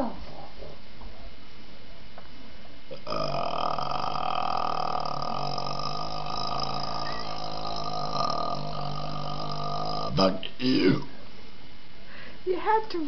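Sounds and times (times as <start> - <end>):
man burping: 2.9 - 11.1.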